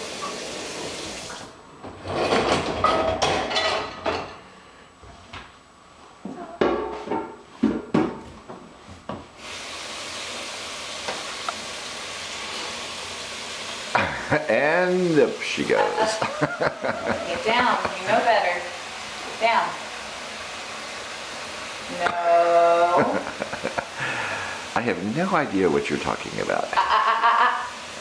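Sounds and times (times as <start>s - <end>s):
dishes clattering in a dishwasher: 1.8s - 4.5s, 6.6s - 8.3s, 13.9s - 14.3s
steady hiss: 9.3s - 28.0s.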